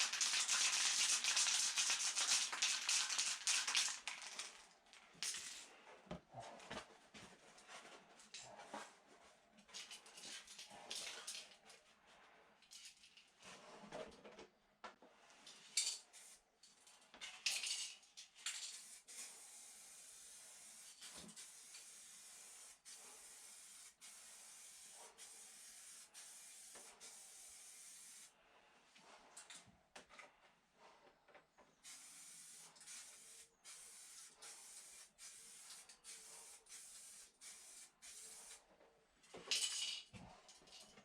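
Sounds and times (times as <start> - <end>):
spray paint hissing: 0.0 - 4.5, 18.7 - 28.3, 31.8 - 38.6.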